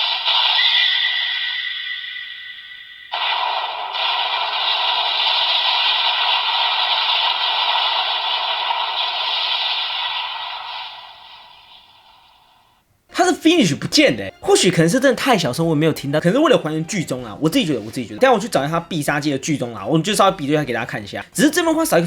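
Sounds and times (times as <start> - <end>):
electronic whoosh from toy speaker: 0.0 - 12.6.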